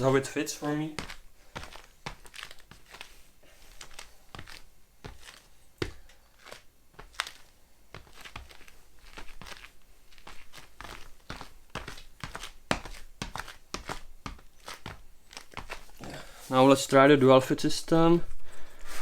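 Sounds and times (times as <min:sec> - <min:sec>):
shoe rustling and knocking: 0:01.0 - 0:16.0.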